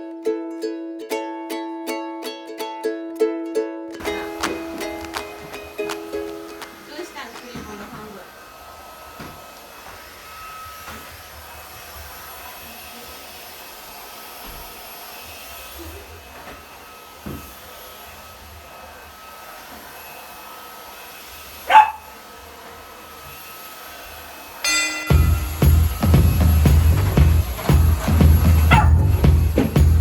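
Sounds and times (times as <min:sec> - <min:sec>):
vacuum cleaner running: 0:04.0 - 0:30.0
puppy barking: 0:21.7 - 0:22.2, 0:28.7 - 0:29.2.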